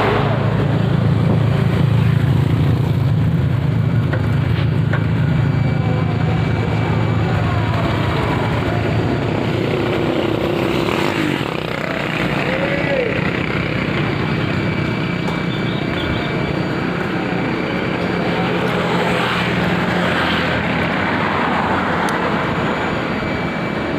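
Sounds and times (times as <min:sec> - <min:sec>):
motorcycle engine running: 0:00.0 - 0:18.7.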